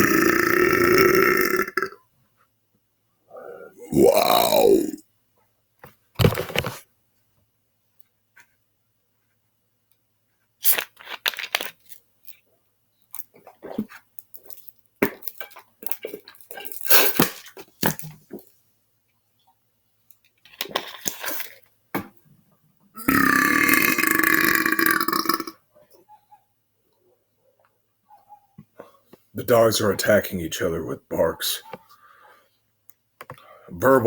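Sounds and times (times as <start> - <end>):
man belching: 0.0 - 2.0, 3.4 - 5.0, 23.0 - 25.6.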